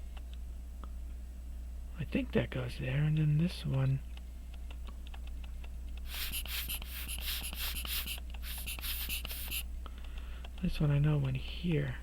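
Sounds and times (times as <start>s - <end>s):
airy breathing close to microphone: 6.1s - 9.6s.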